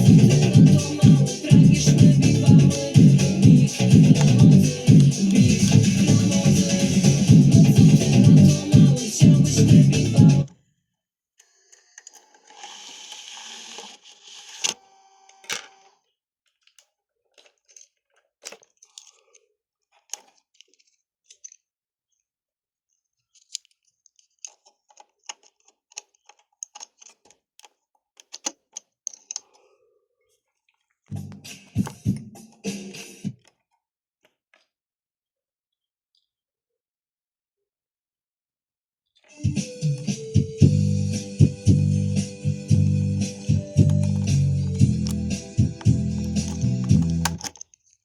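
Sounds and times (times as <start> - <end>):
button clicks: 43.8 - 47.6.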